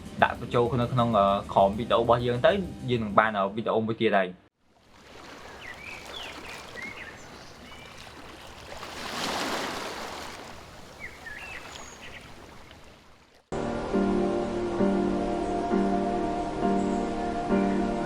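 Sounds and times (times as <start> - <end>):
stream water running: 4.6 - 13.5
small birds chirping: 5.3 - 8.6, 10.8 - 12.8.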